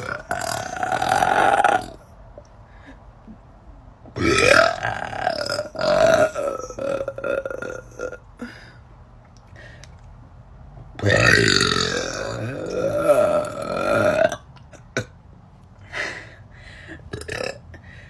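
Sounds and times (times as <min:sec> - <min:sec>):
woman burping: 0:00.0 - 0:02.0, 0:04.2 - 0:08.5, 0:11.0 - 0:15.1, 0:17.1 - 0:17.7.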